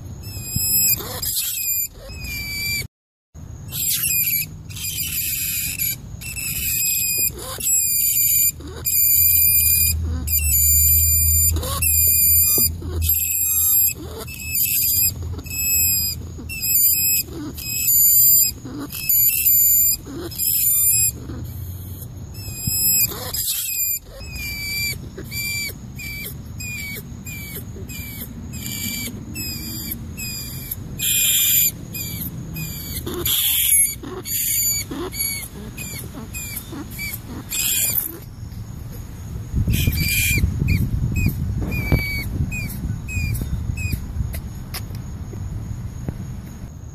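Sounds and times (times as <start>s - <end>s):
rat squeaking: 0.0s - 2.9s, 3.6s - 38.4s, 39.6s - 44.8s.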